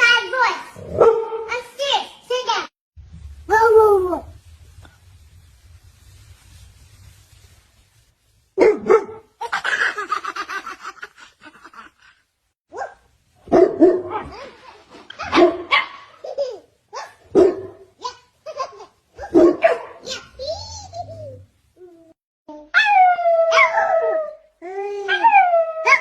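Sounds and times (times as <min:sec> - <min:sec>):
dog barking: 0:00.9 - 0:01.6, 0:08.6 - 0:09.3, 0:12.8 - 0:14.4, 0:15.2 - 0:16.2, 0:17.0 - 0:17.9, 0:19.2 - 0:20.3
baby laughing: 0:09.4 - 0:12.2, 0:16.2 - 0:17.2.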